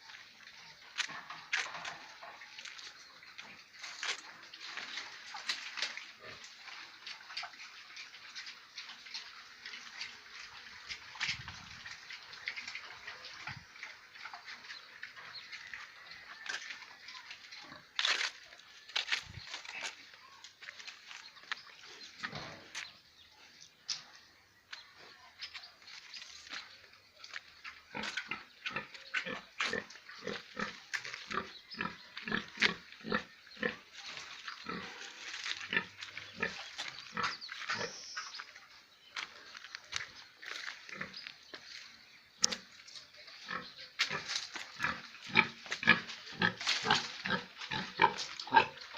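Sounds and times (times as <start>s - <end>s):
piglets squeaking and grunting: 27.6s - 37.9s, 43.4s - 48.9s.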